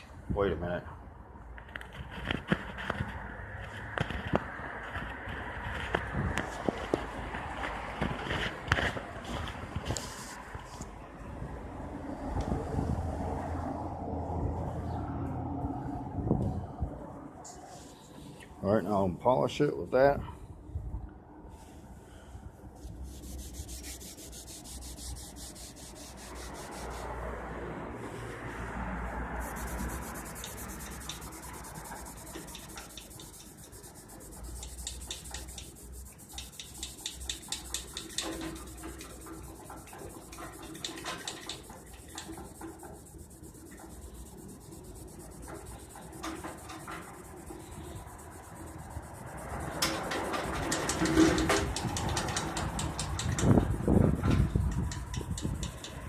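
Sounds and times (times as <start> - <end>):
rubbing metal handle with polish: 22.8 - 27.3, 29.3 - 56.0.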